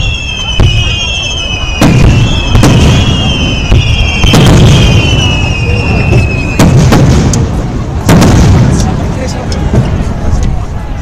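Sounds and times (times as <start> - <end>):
high falling whistle: 0.0 - 6.7
fireworks booms: 0.0 - 10.6.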